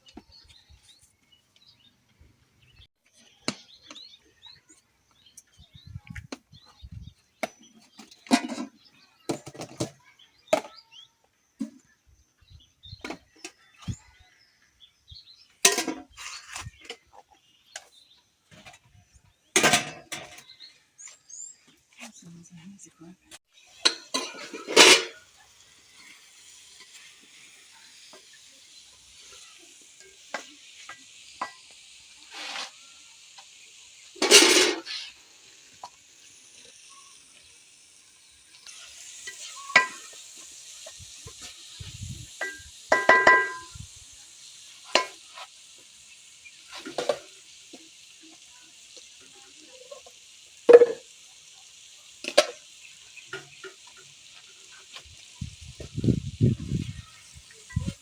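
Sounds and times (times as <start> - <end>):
food sizzling in a hot pan: 23.5 - 58.0
spoon stirring and knocking pot: 39.3 - 40.2, 42.4 - 43.8, 50.7 - 51.0.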